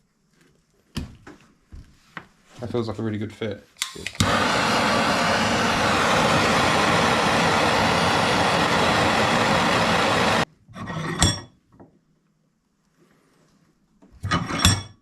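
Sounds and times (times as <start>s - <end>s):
workshop tool rushing noise: 4.1s - 10.4s.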